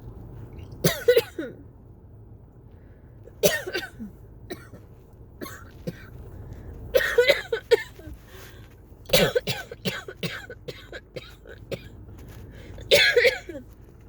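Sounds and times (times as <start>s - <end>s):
person coughing: 0.8s - 1.6s, 3.4s - 4.8s, 5.4s - 6.2s, 7.0s - 8.1s, 9.1s - 11.9s, 12.9s - 13.7s.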